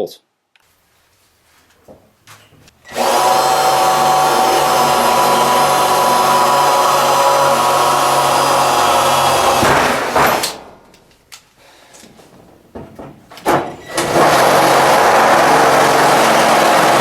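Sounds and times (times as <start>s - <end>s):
electric drill boring through tin: 2.9s - 10.5s, 13.8s - 17.0s
knocks: 12.3s - 13.8s.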